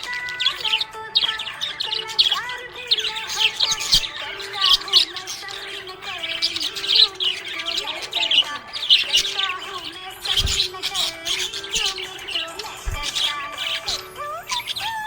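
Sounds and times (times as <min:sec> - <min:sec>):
budgerigars chirping: 0:00.0 - 0:15.0
warbling bird notes: 0:00.0 - 0:15.0.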